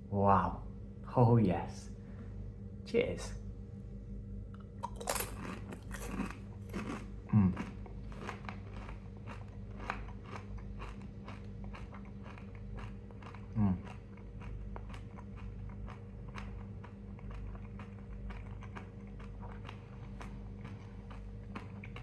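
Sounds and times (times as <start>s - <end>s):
person chewing crunchy pepper: 4.5s - 22.0s
person humming mm: 7.3s - 7.6s, 13.6s - 13.8s.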